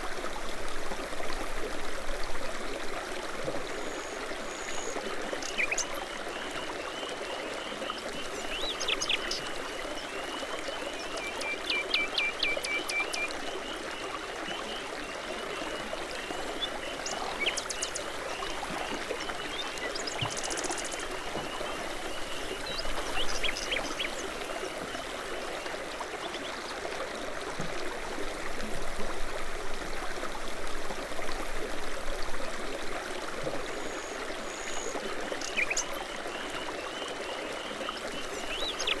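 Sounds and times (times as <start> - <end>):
babbling brook: 0.0 - 39.0
songbirds chirping and trilling: 15.7 - 24.4.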